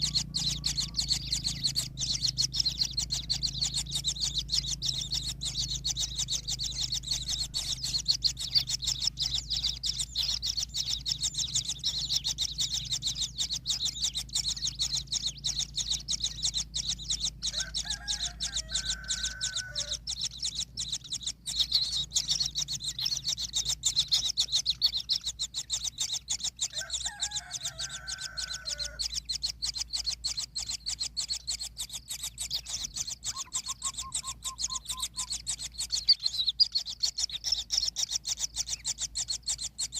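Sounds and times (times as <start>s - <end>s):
rooster crowing: 0.0s - 8.6s, 17.3s - 20.5s, 26.6s - 29.3s
fast high-pitched chittering: 0.0s - 39.9s.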